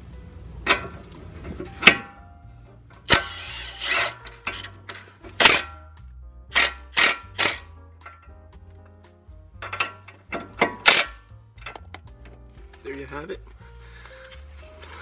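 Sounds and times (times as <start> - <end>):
background music with bass: 0.0 - 15.0
sharp metallic knocks of tools: 9.6 - 12.4.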